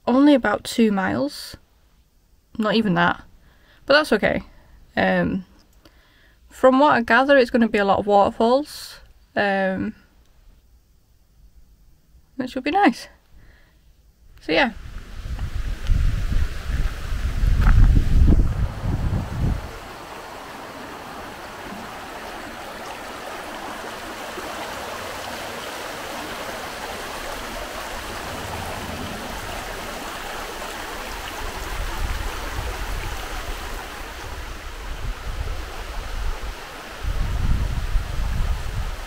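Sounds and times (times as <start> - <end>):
stream water rushing: 14.8 - 39.0
wind buffeting microphone: 14.8 - 39.0.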